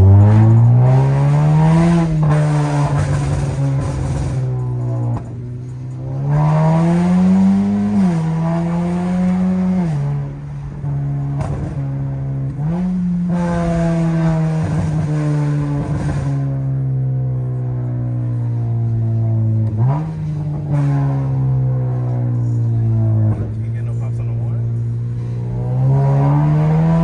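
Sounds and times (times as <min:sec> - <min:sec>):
car engine revving: 0:00.0 - 0:27.0.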